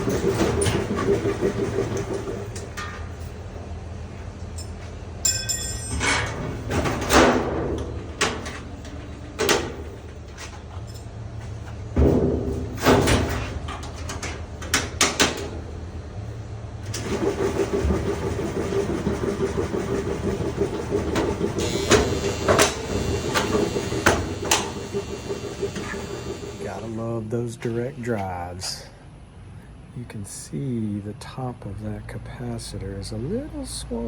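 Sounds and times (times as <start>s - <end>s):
washing machine knocks and clanks: 0.0s - 3.0s, 5.3s - 10.2s, 11.9s - 15.7s, 17.0s - 26.7s
washing machine running: 0.0s - 27.7s.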